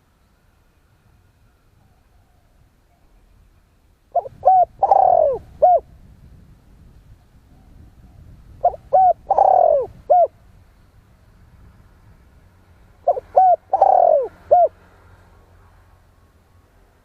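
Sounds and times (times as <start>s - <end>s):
dove cooing: 4.1s - 5.9s, 8.6s - 10.4s, 13.0s - 14.8s.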